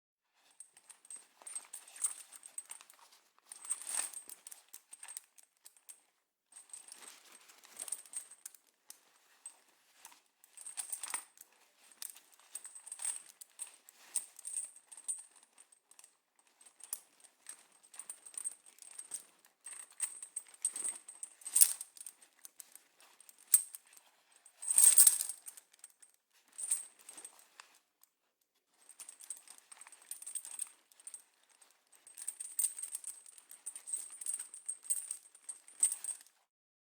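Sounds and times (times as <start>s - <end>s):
metal chain jangling: 24.6s - 25.4s.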